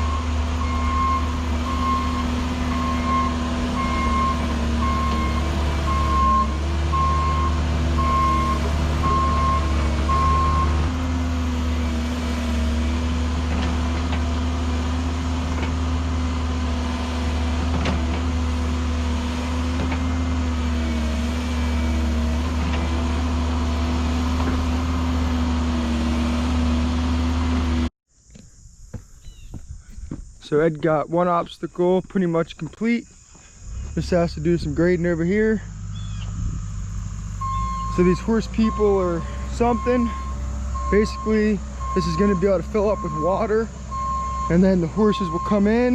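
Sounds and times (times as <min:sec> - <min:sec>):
backup alarm beeping: 0:00.0 - 0:10.8, 0:37.4 - 0:45.8
diesel engine running: 0:00.0 - 0:27.9, 0:33.5 - 0:45.9.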